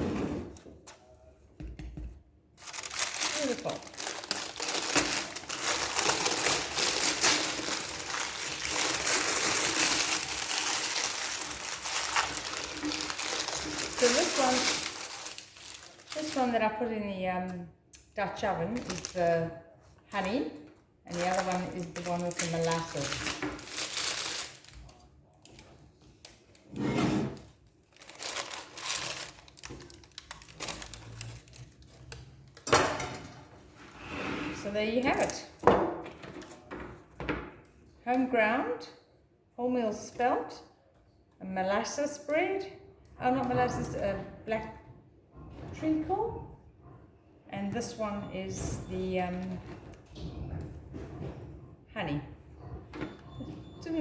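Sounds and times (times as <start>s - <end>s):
crinkling and rustling handling noises: 0.5s - 34.0s, 34.6s - 38.0s, 47.7s - 51.8s
crusty bread crackling: 2.6s - 16.5s, 21.1s - 26.7s, 27.8s - 32.7s.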